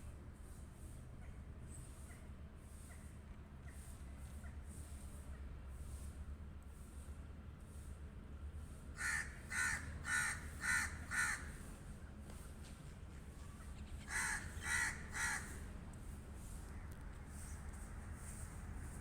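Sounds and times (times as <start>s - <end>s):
crow cawing: 9.0s - 11.6s, 14.0s - 15.6s.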